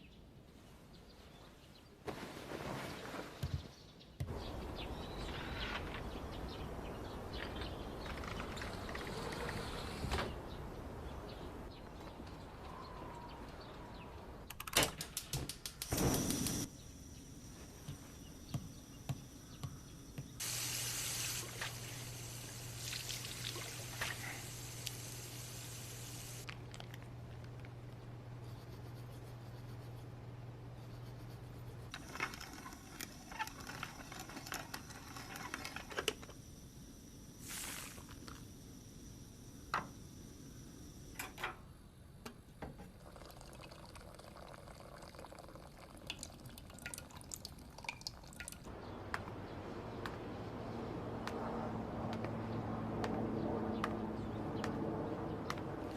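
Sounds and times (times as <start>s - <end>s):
steady low hum: 15.9s - 42.6s
water running and pouring: 20.4s - 26.4s, 43.0s - 48.7s.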